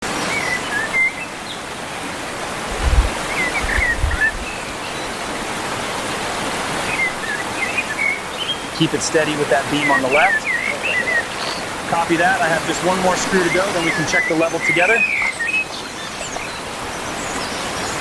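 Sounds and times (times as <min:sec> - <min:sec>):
steady rushing noise: 0:02.0 - 0:15.0
low thuds: 0:02.7 - 0:04.5
bird chirps: 0:09.6 - 0:11.7, 0:13.3 - 0:18.0.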